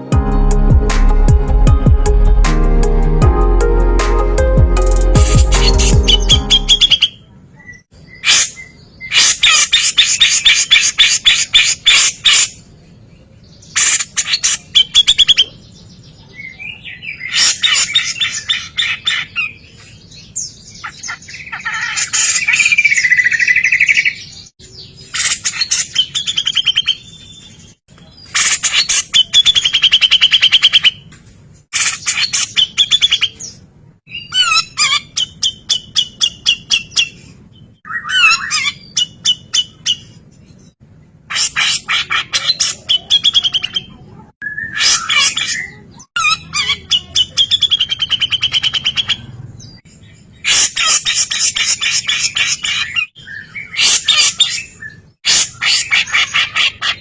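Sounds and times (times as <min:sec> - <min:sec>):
bird singing rapid sharp notes: 0:05.2 - 0:12.6.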